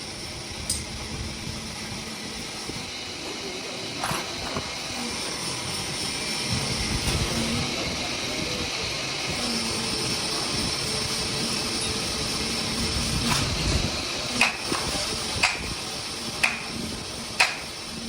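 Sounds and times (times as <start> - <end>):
machine running with hiss: 0.0 - 18.0
sharp knocks: 16.4 - 16.7, 17.4 - 17.7.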